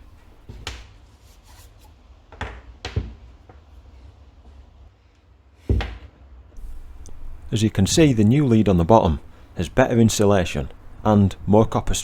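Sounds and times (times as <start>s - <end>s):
low steady hum: 6.4s - 12.0s.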